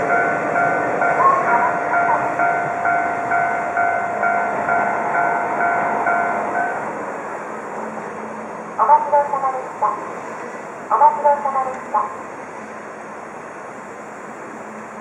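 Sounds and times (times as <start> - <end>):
railroad crossing bell ringing: 0.0 - 7.4
train rumbling past: 0.0 - 15.0.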